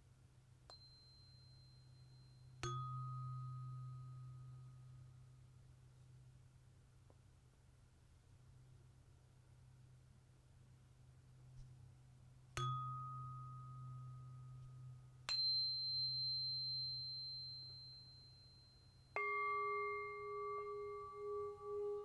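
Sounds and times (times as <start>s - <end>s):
singing bowl ringing: 0.7s - 5.0s, 12.6s - 22.0s
tuning forks ringing: 12.6s - 22.0s.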